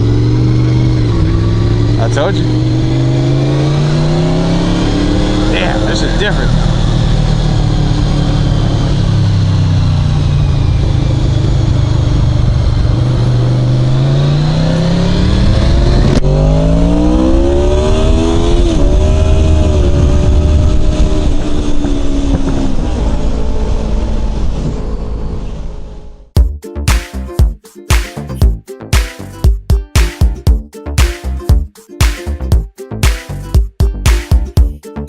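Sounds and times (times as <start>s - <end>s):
motorcycle engine accelerating: 0.0s - 26.3s
wind noise: 17.2s - 25.6s.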